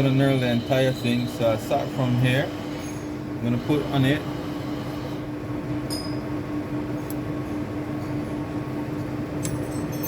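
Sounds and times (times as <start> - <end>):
metal lathe humming: 0.0 - 6.9.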